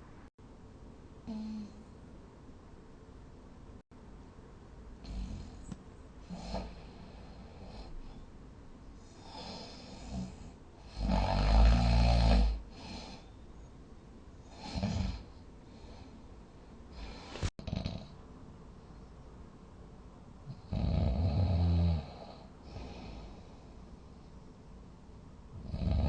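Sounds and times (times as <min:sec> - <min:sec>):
person snoring: 0:01.3 - 0:01.8, 0:09.1 - 0:13.2, 0:14.5 - 0:16.0, 0:25.6 - 0:26.0.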